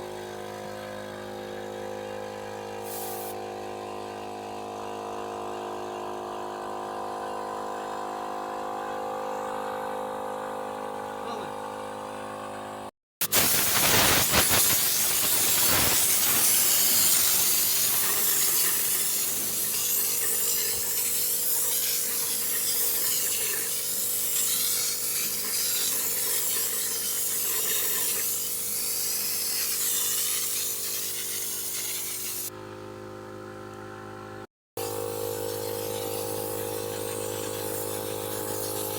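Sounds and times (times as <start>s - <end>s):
air compressor humming: 2.4s - 33.0s, 34.8s - 38.9s
compressed air hissing: 2.8s - 3.4s, 13.2s - 32.5s, 35.4s - 38.9s.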